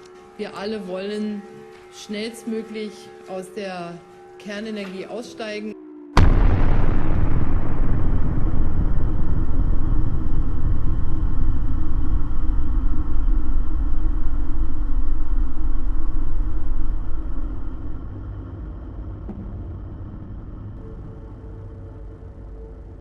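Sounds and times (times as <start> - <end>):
loud deep rumble: 6.2 - 23.0.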